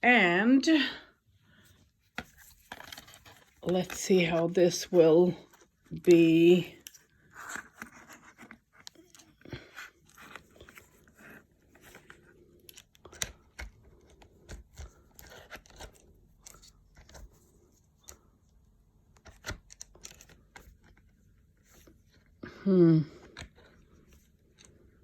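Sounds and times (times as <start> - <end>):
small clicks and knocks: 19.1 - 22.2.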